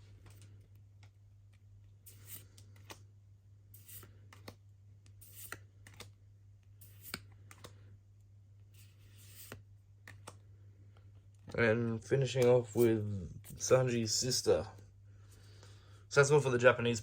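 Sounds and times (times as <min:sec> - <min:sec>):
trading cards being flipped: 0:00.1 - 0:03.1, 0:03.7 - 0:06.2, 0:06.8 - 0:07.8, 0:08.7 - 0:10.5.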